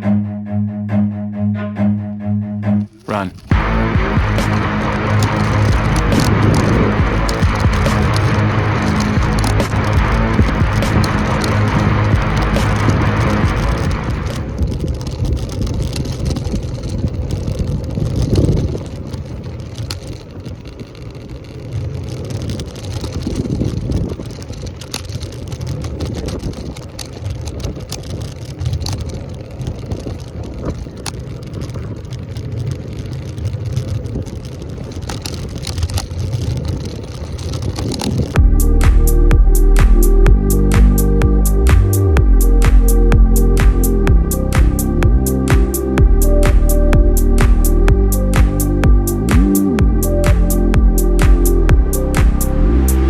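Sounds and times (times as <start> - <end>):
road rumble: 2.7 - 53.0
clicks: 2.8 - 17.5, 30.0 - 53.0
wind buffeting microphone: 3.4 - 53.0.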